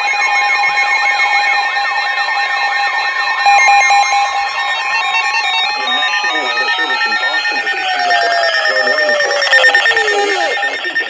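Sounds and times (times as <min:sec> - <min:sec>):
warbling siren-like alarm: 0:00.0 - 0:11.0
steady high alert tones: 0:03.4 - 0:11.0.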